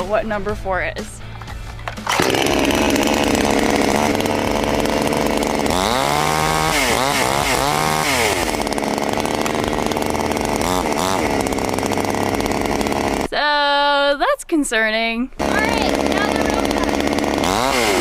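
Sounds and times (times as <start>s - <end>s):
chainsaw running and revving: 1.9s - 13.3s, 15.4s - 18.0s.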